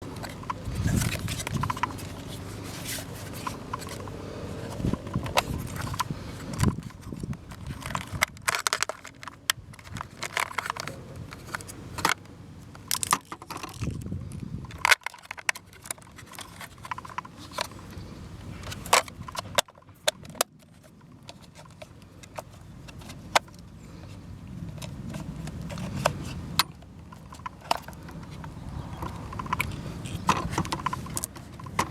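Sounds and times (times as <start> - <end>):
plastic scraping: 0.0 - 31.9.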